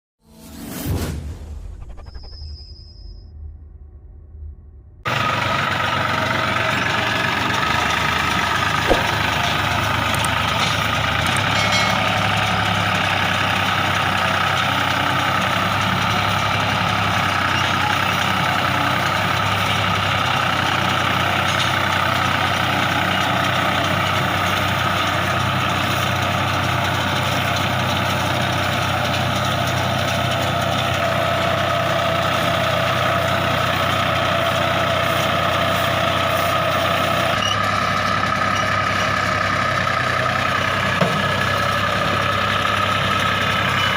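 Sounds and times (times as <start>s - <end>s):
tractor diesel engine running: 5.0s - 43.9s.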